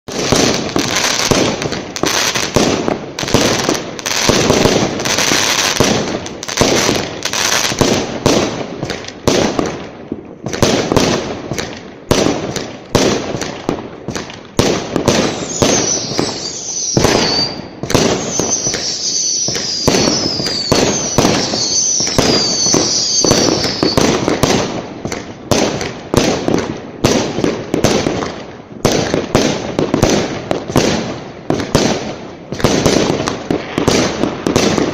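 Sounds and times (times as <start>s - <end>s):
fireworks bangs and crackling: 0.0s - 34.9s
whistling firework shells: 15.0s - 24.6s.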